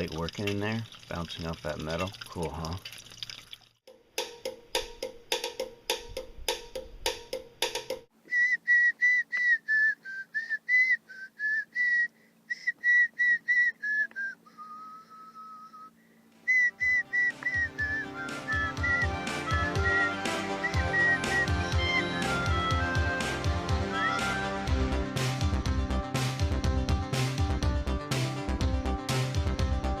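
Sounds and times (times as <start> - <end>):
steady beat: 3.9 - 8.1
whistled tune: 8.3 - 24.6.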